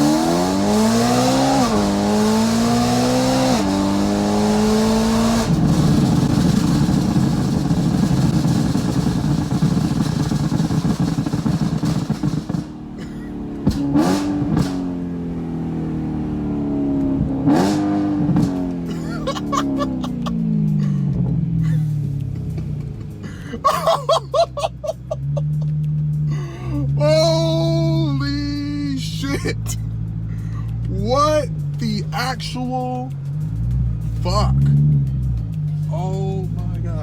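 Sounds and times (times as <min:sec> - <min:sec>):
car engine revving: 0:00.0 - 0:37.0
exhaust crackles and pops: 0:03.5 - 0:15.5, 0:16.9 - 0:26.4.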